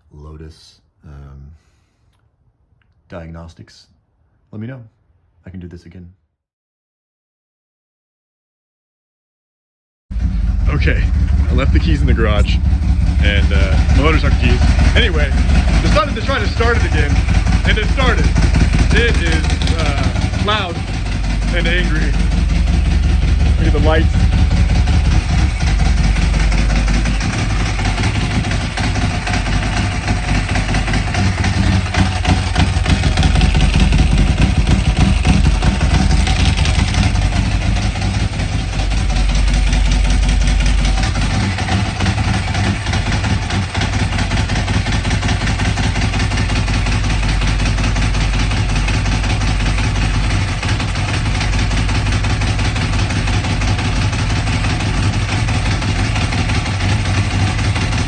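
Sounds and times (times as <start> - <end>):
motorcycle engine idling: 10.1 - 58.0.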